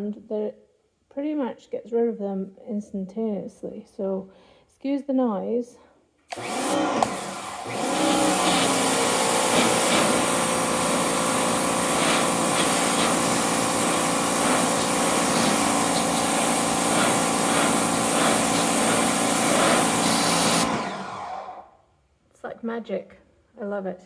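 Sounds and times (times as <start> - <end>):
pressure washer motor hum: 6.3 - 21.7
water jet hissing: 7.1 - 21.2.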